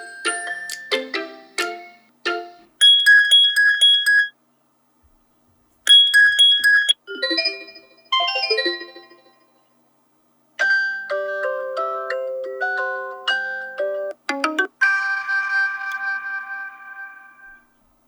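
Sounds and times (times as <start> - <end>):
pulsing electronic beeps: 2.8 - 4.3, 5.9 - 7.0
slow electronic chime melody: 2.8 - 4.3, 5.9 - 9.5.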